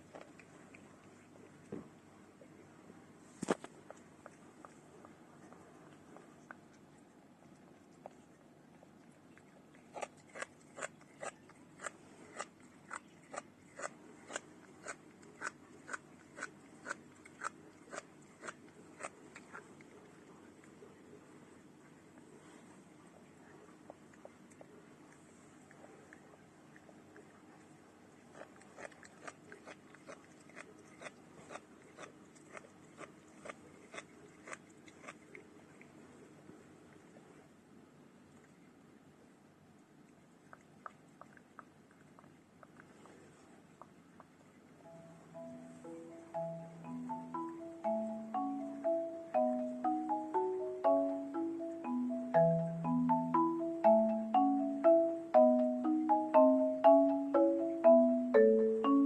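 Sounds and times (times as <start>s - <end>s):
cat crunching dry kibble: 0.0s - 1.7s, 3.6s - 20.8s, 23.9s - 36.0s.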